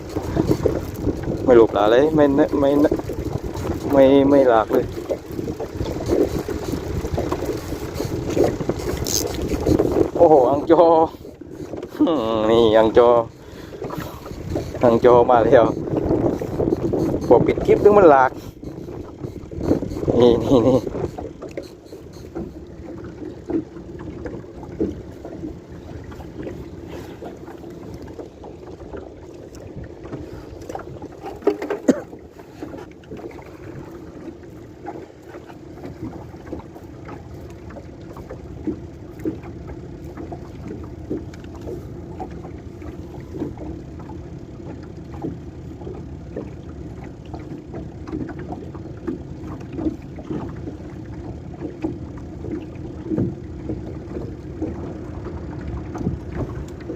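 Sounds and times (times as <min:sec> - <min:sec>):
steady low hum: 0:00.0 - 0:31.2
water slapping against hull: 0:00.0 - 0:56.9.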